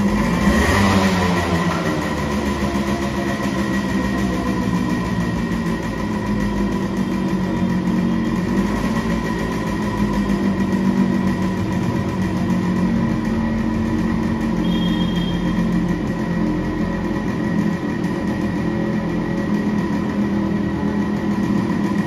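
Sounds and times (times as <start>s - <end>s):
two-stroke engine idling: 0.0s - 22.0s.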